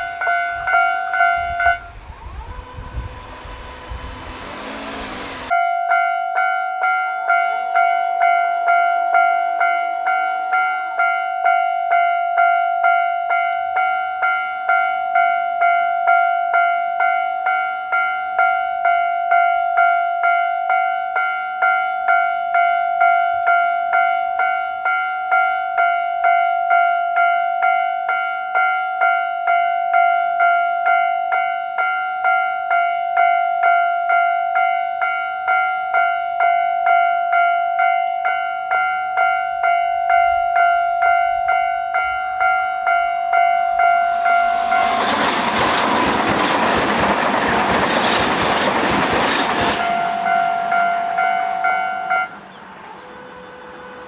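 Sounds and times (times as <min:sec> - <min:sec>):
level crossing bell ringing: 0:00.0 - 0:15.4, 0:35.0 - 0:46.0.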